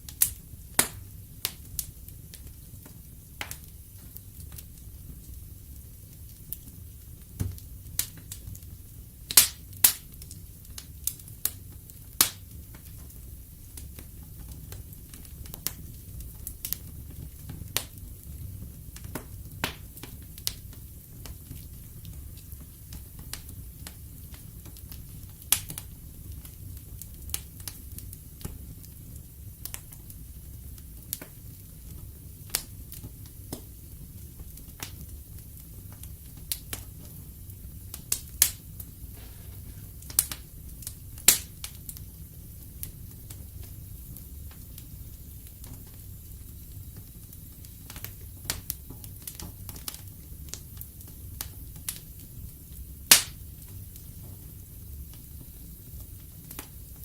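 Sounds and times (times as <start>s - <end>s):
low rumble of flames: 0.0s - 57.0s
wood fire crackling and popping: 0.0s - 57.0s.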